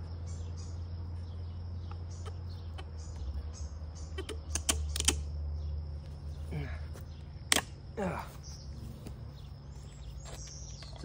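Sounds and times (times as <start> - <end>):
steady low hum: 0.0 - 11.0
sharp clicks and knocks: 4.2 - 5.3.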